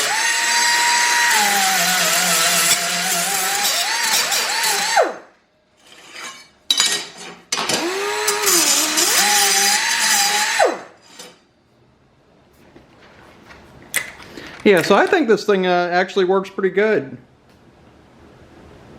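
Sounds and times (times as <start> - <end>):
pneumatic cut-off tool whining: 0.0 - 5.2, 7.7 - 10.9.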